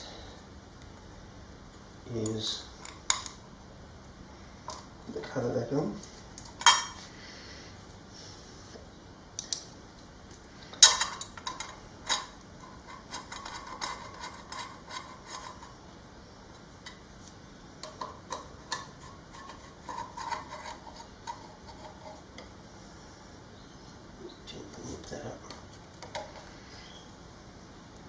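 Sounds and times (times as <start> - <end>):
metal parts clinking and knocking: 10.8 - 15.8
small ticks and metallic rattling: 10.8 - 15.8, 17.8 - 22.6.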